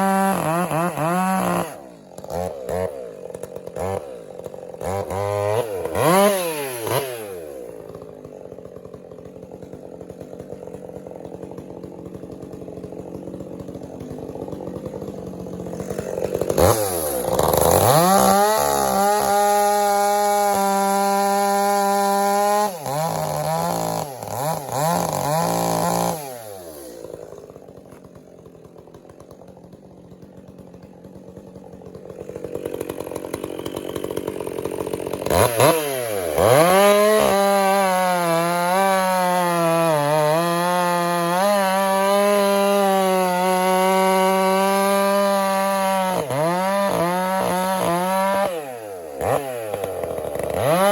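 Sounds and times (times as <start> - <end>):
chainsaw engine revving and idling: 0.0 - 50.9.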